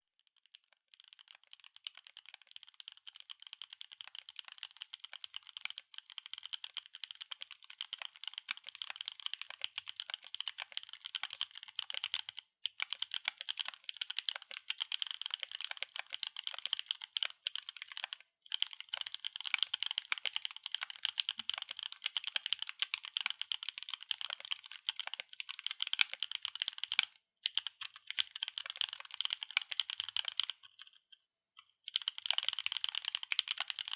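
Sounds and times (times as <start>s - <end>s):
rapid typing on mechanical keyboard: 0.4s - 31.0s, 31.8s - 33.9s.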